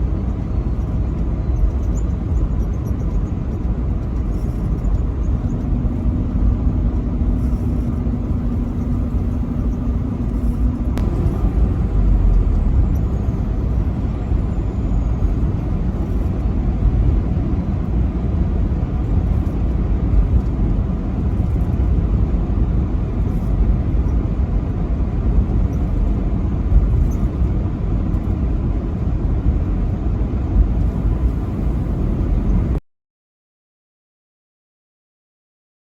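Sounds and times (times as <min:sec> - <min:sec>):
faint steady hum: 0:00.0 - 0:17.2
truck engine and tyres rumbling: 0:00.0 - 0:32.8.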